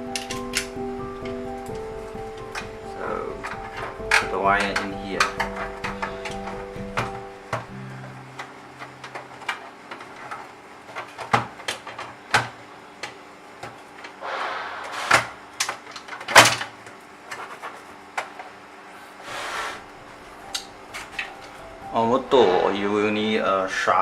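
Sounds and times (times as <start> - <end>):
lock parts clicking and knocking: 3.3 - 7.7
short scraping: 14.2 - 15.5.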